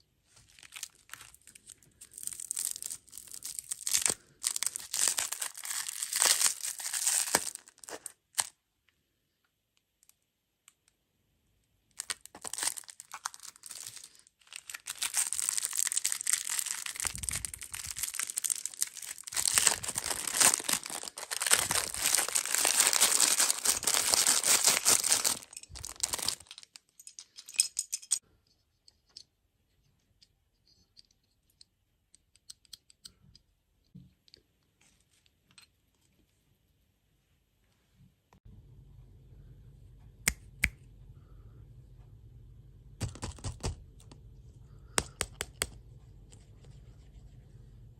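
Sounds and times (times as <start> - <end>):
wrapper crinkling and tearing: 0.4 - 8.5, 12.0 - 27.0.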